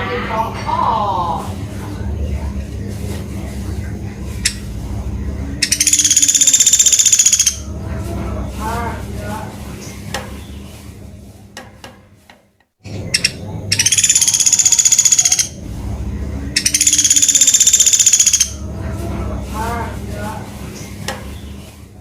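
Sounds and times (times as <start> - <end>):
steady low hum: 0.0 - 22.0
soft low bird calls: 1.1 - 11.0, 12.9 - 19.5
woodpecker rattling trills: 3.7 - 8.0, 13.0 - 15.6, 16.5 - 18.7.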